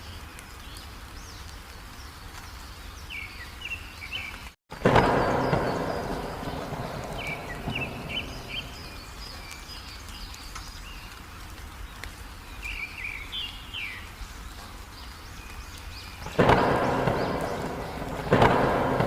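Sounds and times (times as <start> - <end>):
rain hiss: 0.0 - 19.0
songbirds chirping: 0.0 - 19.0
thunder crack: 4.7 - 9.3, 16.2 - 19.0.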